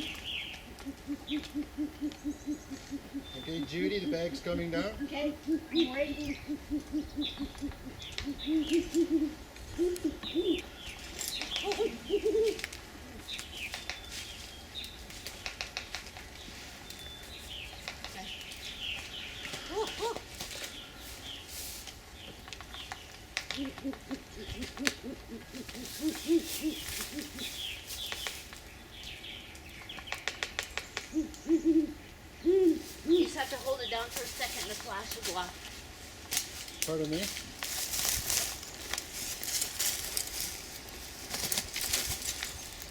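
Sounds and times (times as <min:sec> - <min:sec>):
owl hooting: 0:00.0 - 0:10.8, 0:11.4 - 0:13.3, 0:23.4 - 0:27.8, 0:31.0 - 0:35.5
high chirping calls: 0:00.0 - 0:12.6.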